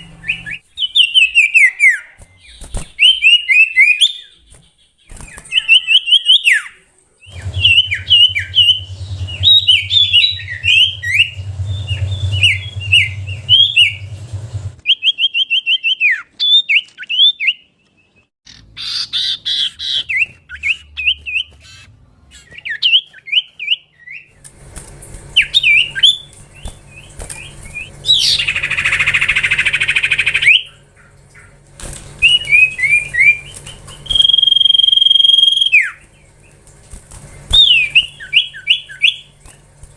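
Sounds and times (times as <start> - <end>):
bird whistled chirps and trills: 0.0 - 14.2, 14.8 - 24.3, 25.4 - 31.5, 32.2 - 36.6, 37.4 - 39.4
bird harsh rasping call: 27.6 - 31.6.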